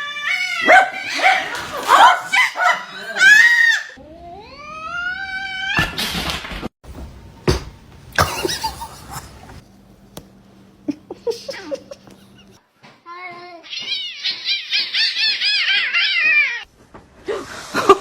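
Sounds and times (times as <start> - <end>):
knocks: 6.9 - 8.1.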